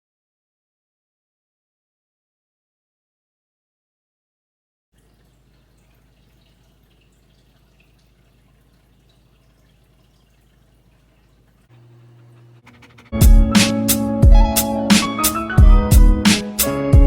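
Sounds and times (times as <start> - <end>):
faint drip-like ticks: 5.0 - 11.7.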